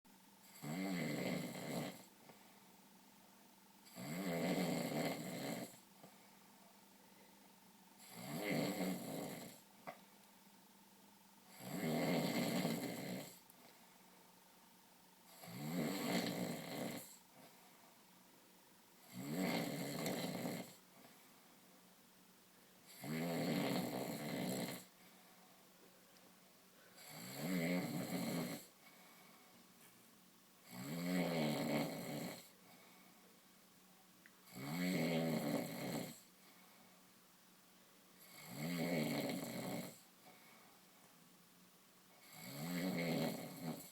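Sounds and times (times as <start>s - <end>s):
man snoring: 0.5s - 2.1s, 3.9s - 5.8s, 8.0s - 9.6s, 11.5s - 13.4s, 15.3s - 17.2s, 19.0s - 20.8s, 22.9s - 24.9s, 27.0s - 28.7s, 30.6s - 32.5s, 34.5s - 36.3s, 38.2s - 40.1s, 42.2s - 43.9s.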